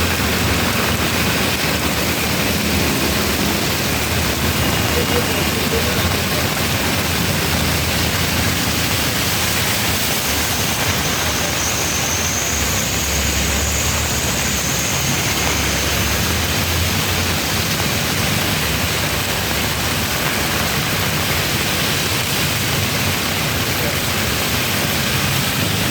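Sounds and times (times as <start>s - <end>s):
heavy rain pouring: 0.0s - 25.9s.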